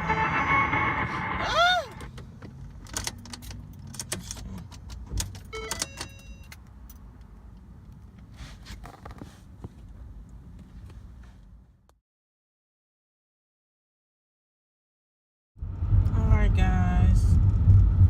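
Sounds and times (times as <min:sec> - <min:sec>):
electronic warning chime: 0:00.0 - 0:02.1, 0:05.5 - 0:06.6
low steady rumble: 0:15.6 - 0:18.0.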